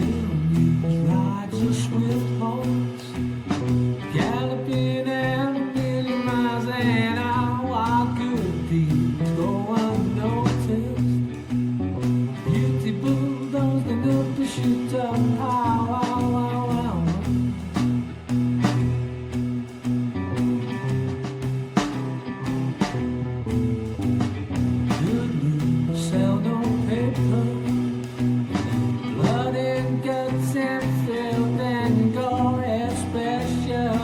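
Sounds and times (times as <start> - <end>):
person singing lead melody: 0.0 - 3.2, 4.0 - 11.4, 12.3 - 17.9, 24.8 - 28.2, 29.0 - 34.0
guitar accompaniment: 0.0 - 34.0.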